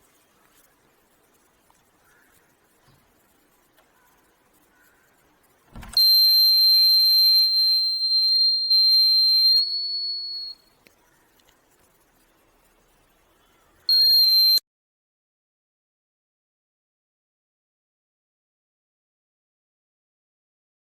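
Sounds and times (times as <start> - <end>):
door thump: 5.7 - 6.2
door alarm buzzer tone: 5.7 - 10.6, 13.9 - 14.6.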